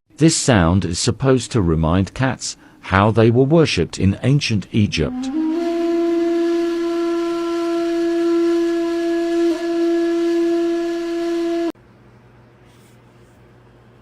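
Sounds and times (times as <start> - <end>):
horn-like wind instrument note: 4.9 - 11.8.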